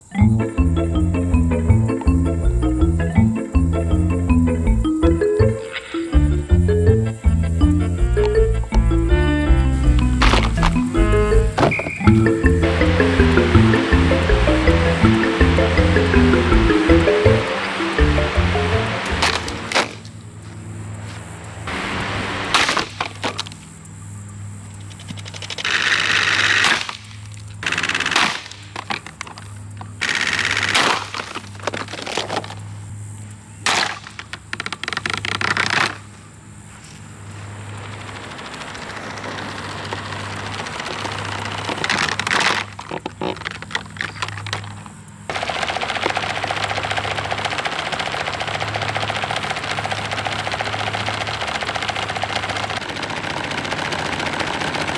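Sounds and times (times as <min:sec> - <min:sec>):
low hum: 0:00.0 - 0:22.6
steady noise: 0:00.0 - 0:24.8
clattering and cracking strikes: 0:07.6 - 0:20.1.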